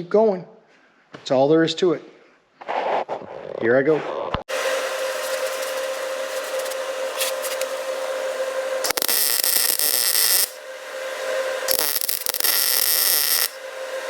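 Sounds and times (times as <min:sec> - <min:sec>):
steady hum: 0:04.5 - 0:14.0
welding arc crackling hiss: 0:04.5 - 0:14.0.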